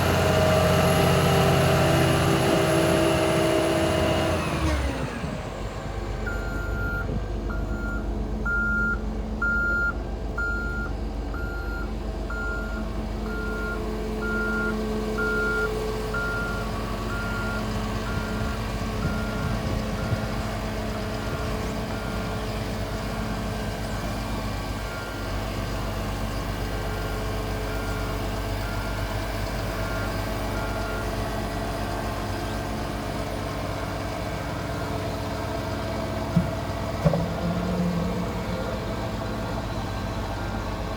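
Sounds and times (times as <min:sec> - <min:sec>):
diesel engine running: 0:00.0 - 0:40.9
backup alarm beeping: 0:06.3 - 0:19.6.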